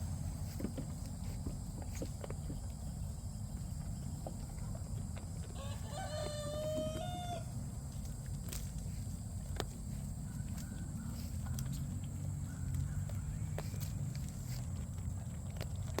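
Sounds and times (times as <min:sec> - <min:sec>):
steady low rumble: 0:00.0 - 0:05.6
rooster crowing: 0:05.5 - 0:07.6.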